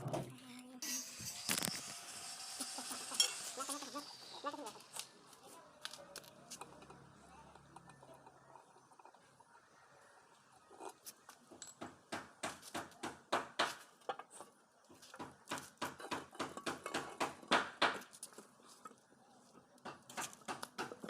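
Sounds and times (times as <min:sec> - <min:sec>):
metal clinking and tapping: 0:11.5 - 0:12.0.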